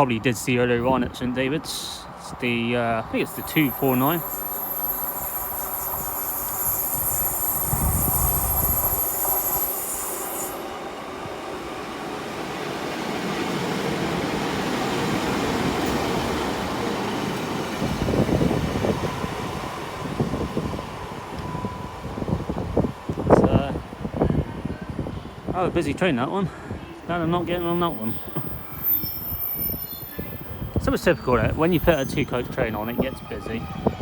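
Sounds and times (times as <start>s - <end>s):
diesel train engine rumble: 0.0s - 34.0s
thin high squeal: 3.3s - 10.7s, 27.4s - 33.7s.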